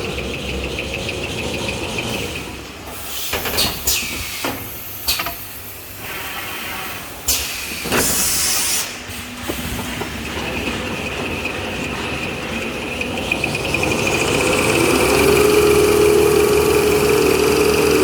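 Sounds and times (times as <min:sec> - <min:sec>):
machine sharp clacks: 0:10.2 - 0:18.0
paper rewinding machine running: 0:10.2 - 0:18.0.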